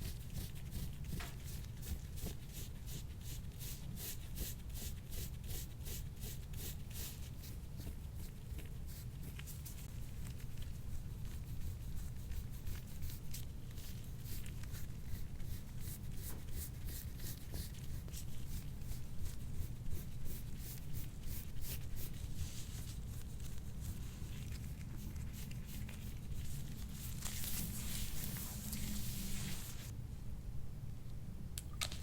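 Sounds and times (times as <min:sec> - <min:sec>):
hands rubbing skin and clothing: 0:11.5 - 0:29.9.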